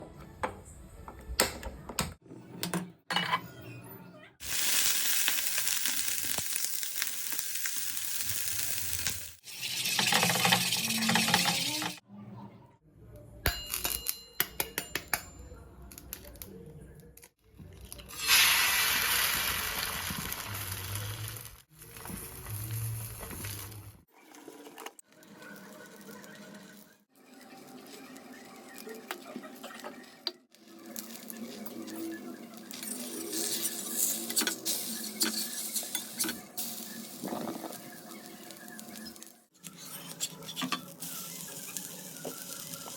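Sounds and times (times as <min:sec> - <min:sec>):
egg sizzling in a pan: 0:04.4 - 0:12.0, 0:18.2 - 0:23.9, 0:40.8 - 0:42.9
utensils clinking against a bowl: 0:09.6 - 0:12.0, 0:13.5 - 0:15.6.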